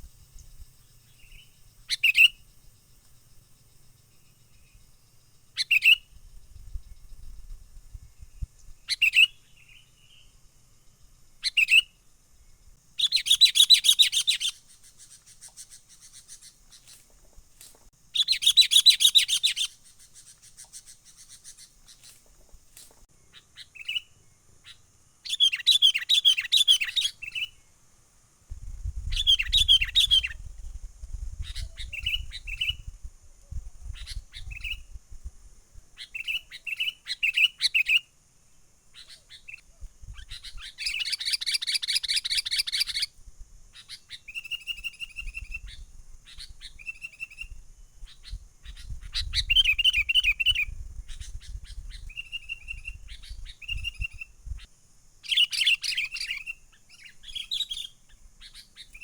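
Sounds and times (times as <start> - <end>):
bulbul chirping and trilling: 13.0 - 17.0, 18.2 - 22.1.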